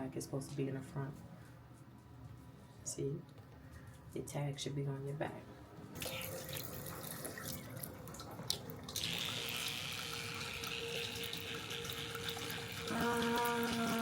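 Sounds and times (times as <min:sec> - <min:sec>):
tap water running into sink: 0:06.0 - 0:14.0.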